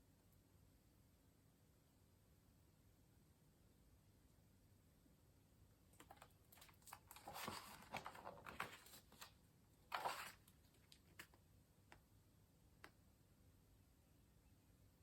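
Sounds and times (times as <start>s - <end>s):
book pages rustling: 6.0s - 11.4s.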